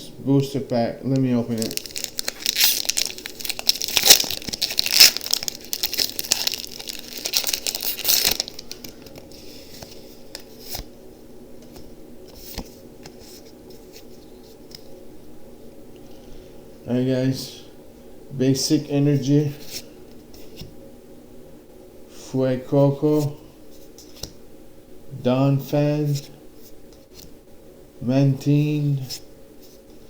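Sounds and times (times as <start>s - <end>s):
foil wrapper crinkling and tearing: 1.5s - 9.2s.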